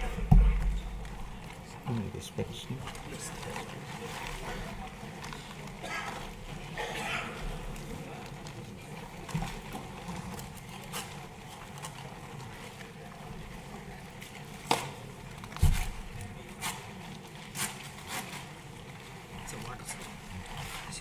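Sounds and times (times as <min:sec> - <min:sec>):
low thump: 0:00.0 - 0:01.3.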